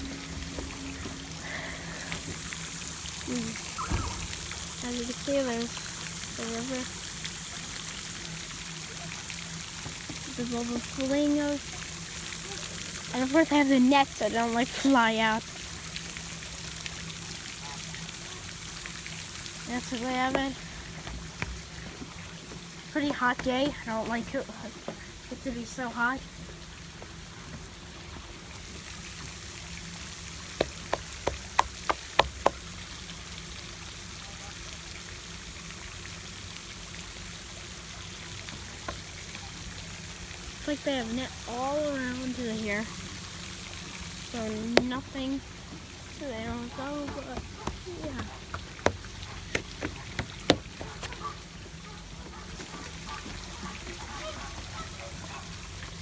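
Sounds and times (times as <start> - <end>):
stream rushing: 0.0 - 6.8
faint bird calls: 3.6 - 4.4.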